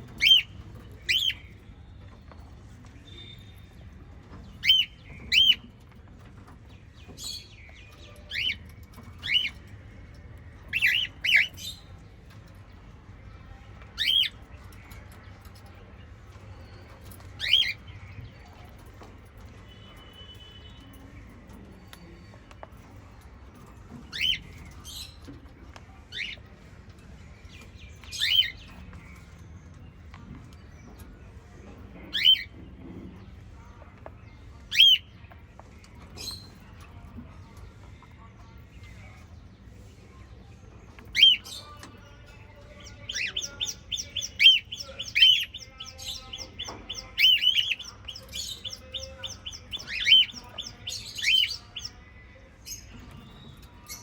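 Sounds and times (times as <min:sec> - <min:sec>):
parrots chirping: 0:10.7 - 0:11.9, 0:43.1 - 0:52.0.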